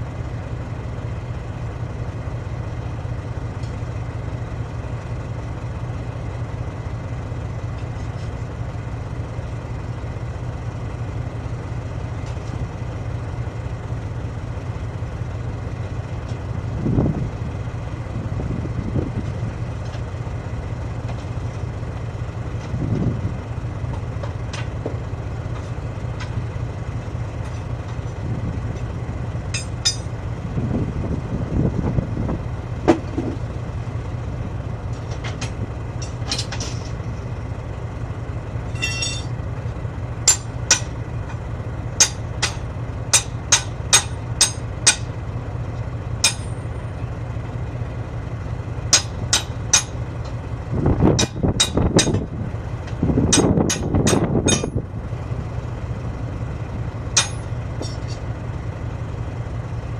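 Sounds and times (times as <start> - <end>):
heavy engine idling: 0.0 - 59.9
tools striking steel: 29.5 - 30.1, 38.7 - 39.4, 40.2 - 41.0, 42.0 - 45.1, 46.2 - 46.8, 48.9 - 50.0, 51.2 - 52.3, 53.3 - 54.8, 57.1 - 58.3.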